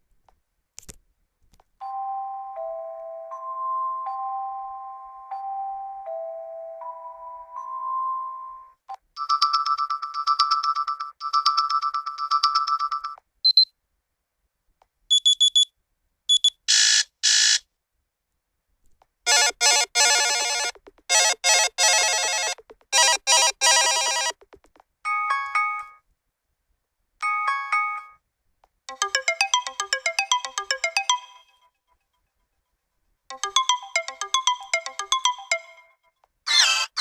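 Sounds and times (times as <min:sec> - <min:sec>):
melodic ringtone: 0:01.8 - 0:13.2, 0:19.3 - 0:26.0, 0:27.2 - 0:28.2, 0:28.9 - 0:31.8, 0:33.3 - 0:37.0
rapid repeating trill: 0:19.3 - 0:24.8.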